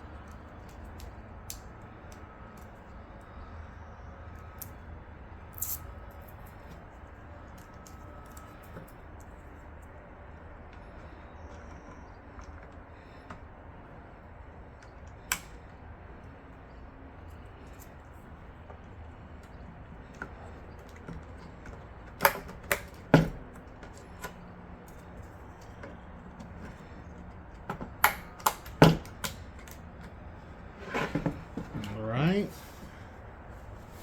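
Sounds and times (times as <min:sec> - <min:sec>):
memory slot latches snapping shut: 0:22.2 - 0:23.3, 0:27.8 - 0:29.8.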